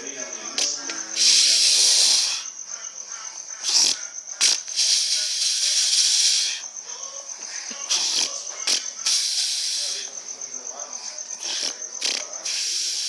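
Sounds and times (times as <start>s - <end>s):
brief snorts: 3.6s - 6.6s, 11.4s - 13.0s.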